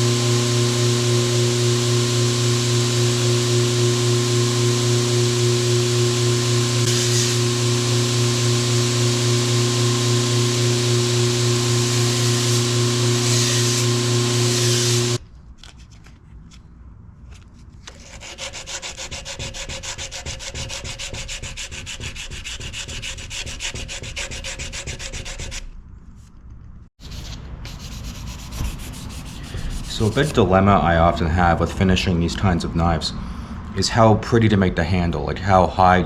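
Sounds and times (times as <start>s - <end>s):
power tool humming: 0.0s - 15.2s
sandpaper rubbing on wood: 18.0s - 25.6s, 27.0s - 30.4s.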